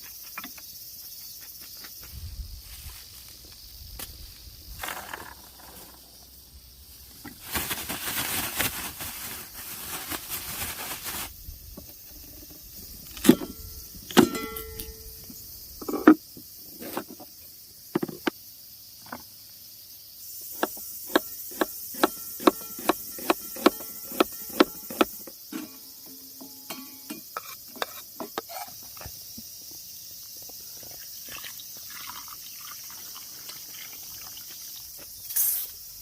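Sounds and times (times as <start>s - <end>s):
sharp metallic knocks and clanks: 20.6s - 27.4s.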